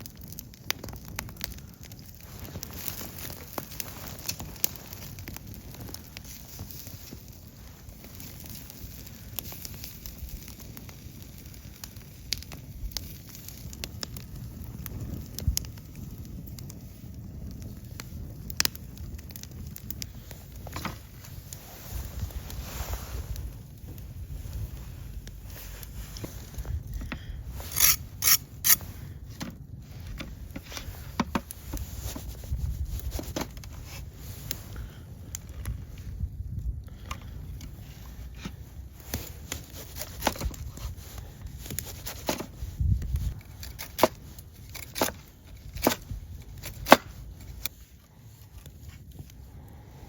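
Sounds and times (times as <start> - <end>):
wind rumble on microphone: 0.0 - 50.0
wood fire crackling: 0.0 - 50.0
sharp scrapes: 27.5 - 29.0.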